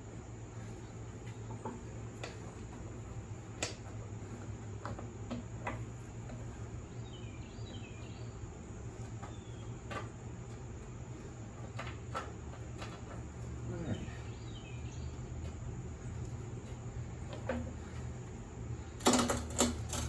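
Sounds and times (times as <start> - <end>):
steady low hum: 0.0 - 20.0
bird chirping: 6.8 - 8.6, 9.2 - 9.8, 13.7 - 15.5
hand tools clicking and knocking: 19.0 - 20.0.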